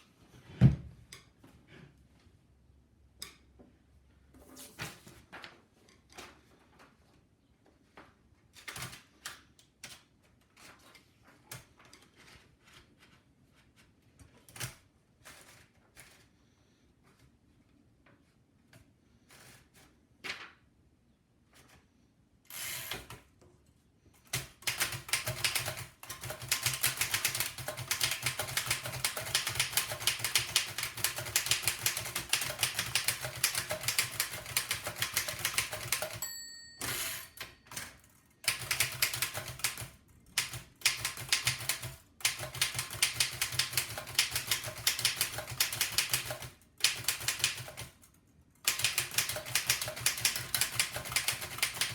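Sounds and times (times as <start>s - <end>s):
typewriter keys clacking: 24.3s - 51.9s
typewriter bell ring: 35.3s - 38.1s.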